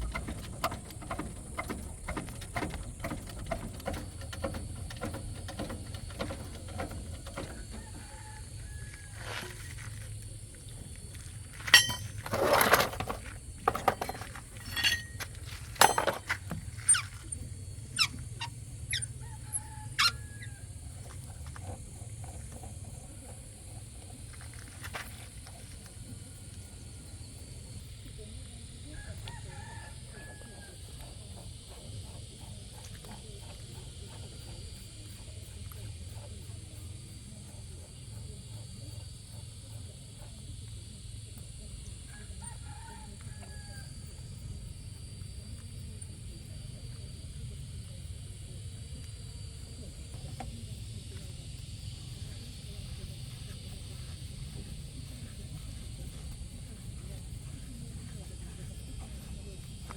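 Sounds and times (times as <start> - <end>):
sharp knocks and clanks: 0.0 - 7.9, 11.6 - 16.6
steady low hum: 0.0 - 59.9.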